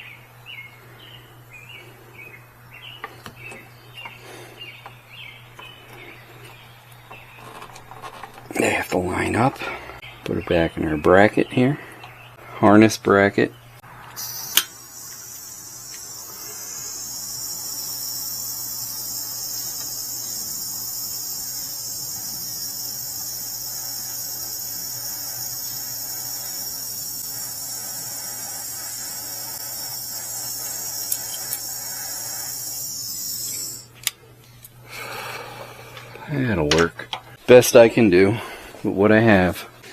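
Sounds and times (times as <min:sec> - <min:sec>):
heat tool hissing: 0:14.1 - 0:33.9.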